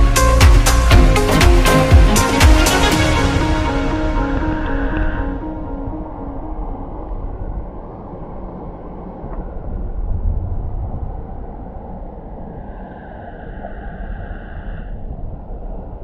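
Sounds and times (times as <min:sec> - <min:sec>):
muffled underwater stream rumbling: 0:04.1 - 0:16.0.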